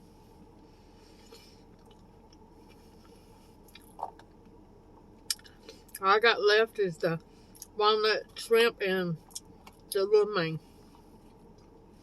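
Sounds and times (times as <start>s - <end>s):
person chewing: 1.2s - 4.4s.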